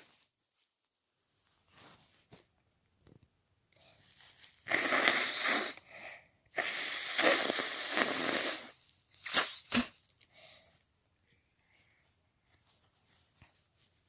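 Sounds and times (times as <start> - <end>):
person sneezing: 4.7 - 5.9, 6.5 - 10.0.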